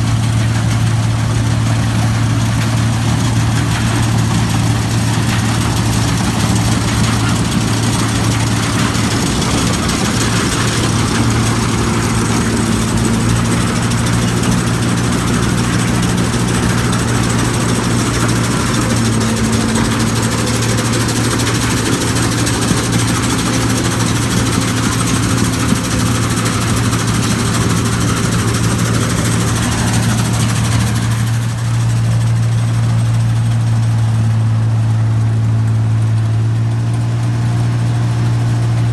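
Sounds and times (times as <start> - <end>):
combine harvester engine hum: 0.0 - 38.9
rushing noise of machine: 0.0 - 38.9.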